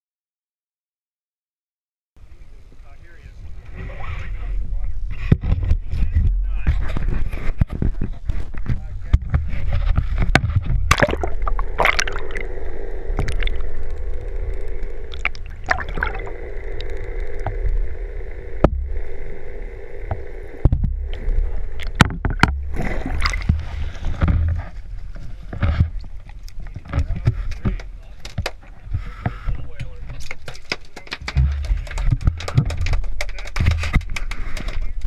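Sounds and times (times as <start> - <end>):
water sloshing around a boat: 9.4 - 12.4, 15.1 - 16.4, 21.8 - 30.7
low rumble: 9.4 - 26.4, 31.2 - 34.1
sharp knocks and clunks: 26.8 - 34.8.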